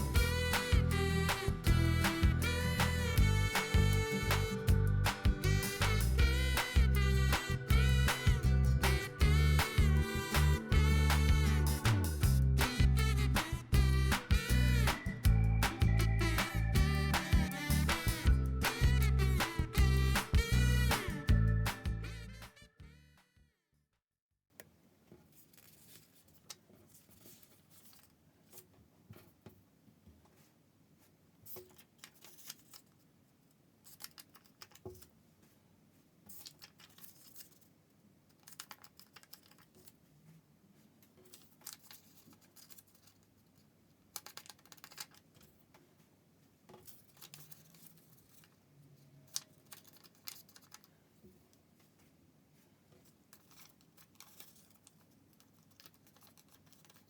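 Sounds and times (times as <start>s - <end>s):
paper rustling and crinkling: 25.2s - 29.4s, 31.5s - 33.0s, 36.3s - 37.7s, 40.8s - 45.6s, 46.8s - 48.6s, 49.2s - 50.9s, 51.8s - 57.0s.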